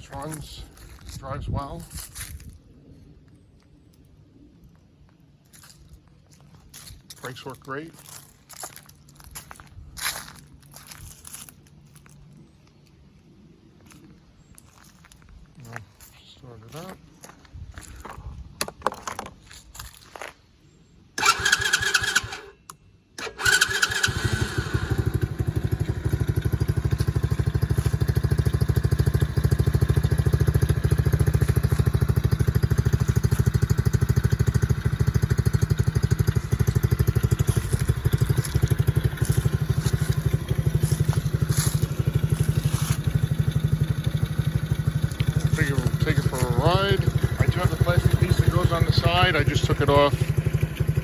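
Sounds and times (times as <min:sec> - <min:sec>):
engine cranking: 0:21.2 - 0:51.0
small engine idling: 0:21.2 - 0:51.0.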